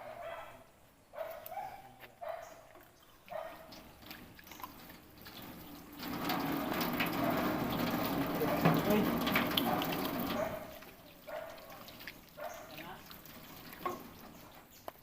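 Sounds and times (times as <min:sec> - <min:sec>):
dog barking: 0:00.0 - 0:02.6, 0:03.3 - 0:03.7, 0:10.2 - 0:13.0.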